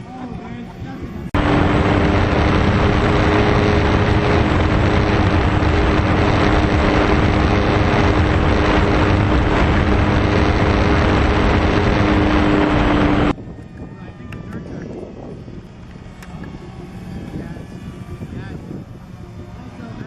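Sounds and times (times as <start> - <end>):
wind rush on microphone: 0.0 - 20.0
model plane electric motor: 0.8 - 20.0.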